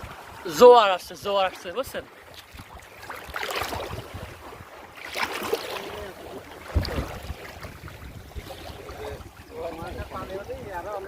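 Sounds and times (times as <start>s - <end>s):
river water: 0.0s - 11.0s
wind noise on microphone: 2.5s - 5.5s, 6.2s - 11.0s.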